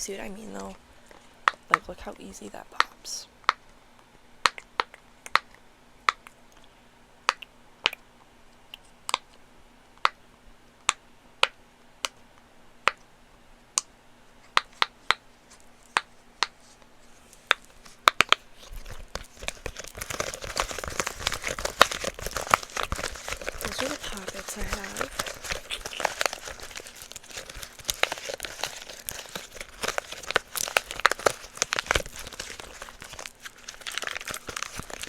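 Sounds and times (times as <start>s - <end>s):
crinkly rustling handling noise: 16.6s - 35.0s.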